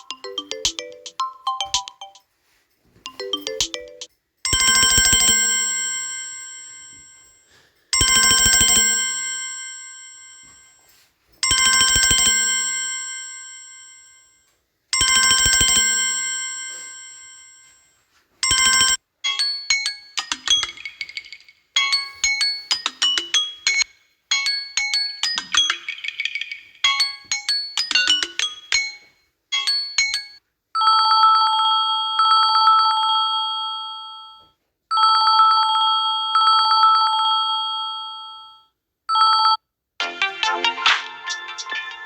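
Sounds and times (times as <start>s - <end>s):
quick tinkling melody: 0.0s - 4.9s
bell-like ringtone chime: 0.0s - 42.0s.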